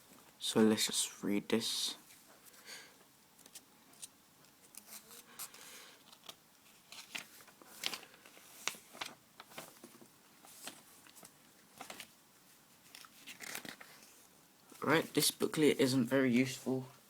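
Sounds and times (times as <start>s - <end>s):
paper pages rustling: 3.4s - 15.2s.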